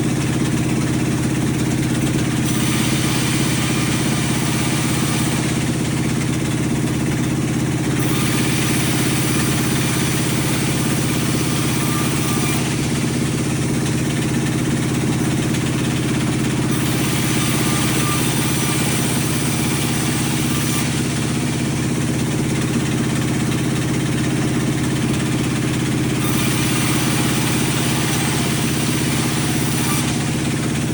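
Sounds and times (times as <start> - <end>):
sawmill machinery humming: 0.0 - 30.9
hissing noise: 2.4 - 6.0.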